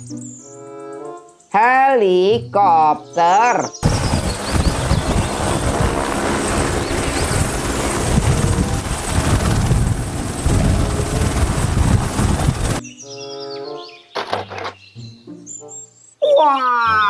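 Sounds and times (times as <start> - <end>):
helicopter rotor chopping: 3.8 - 12.8.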